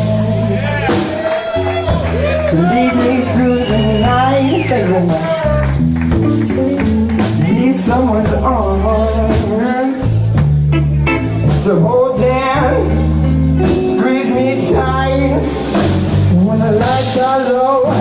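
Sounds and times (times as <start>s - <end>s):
live blues band playing: 0.0s - 18.0s
lead melody with heavy vibrato: 10.6s - 16.6s.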